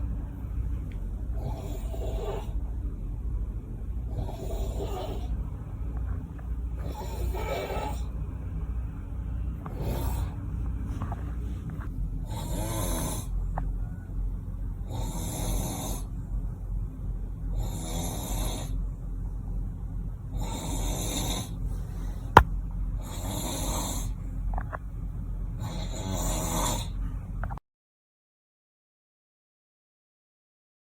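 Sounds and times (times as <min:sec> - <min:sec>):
steady low hum: 0:00.0 - 0:15.2, 0:18.8 - 0:25.6.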